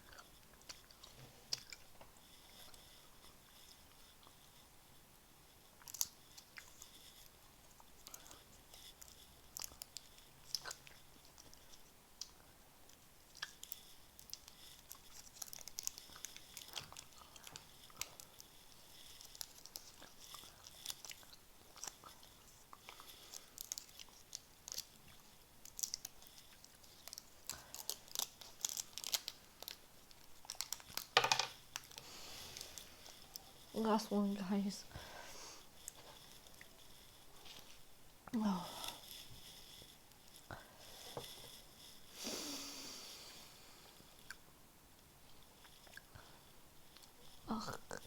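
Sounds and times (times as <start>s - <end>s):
mouth chewing and smacking: 0.0s - 2.0s, 7.7s - 31.2s, 45.3s - 46.3s.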